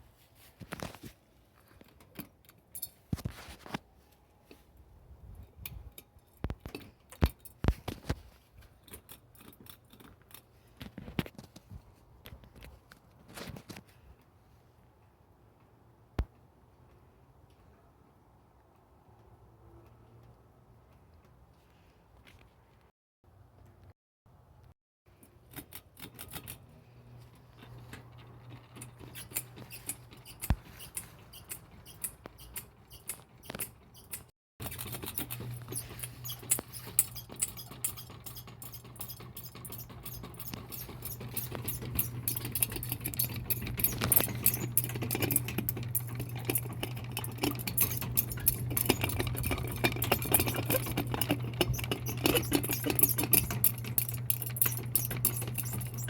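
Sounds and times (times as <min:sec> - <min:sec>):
fan clicking and rattling: 0:25.1 - 0:56.0.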